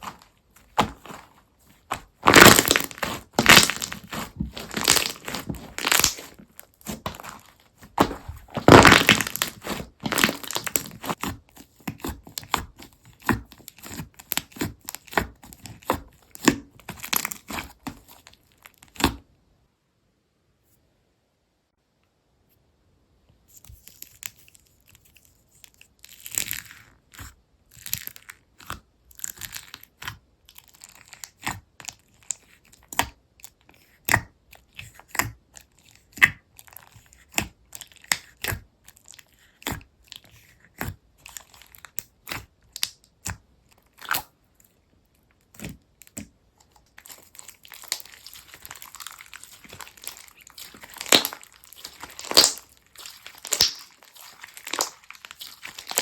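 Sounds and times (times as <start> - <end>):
slime crackling: 0.0 - 19.2, 35.9 - 44.4, 45.4 - 56.0
slime popping and clicking: 2.2 - 7.4, 8.0 - 11.1, 47.0 - 56.0.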